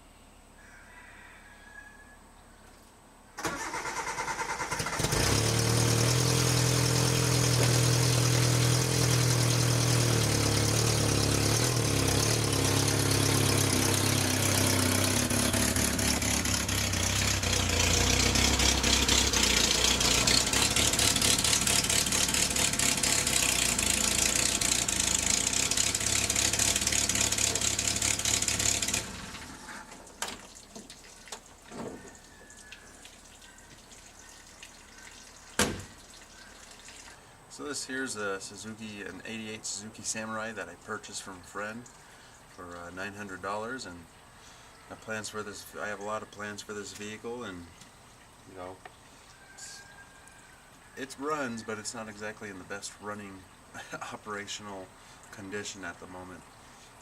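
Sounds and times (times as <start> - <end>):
car engine starting and running: 3.4 - 30.2.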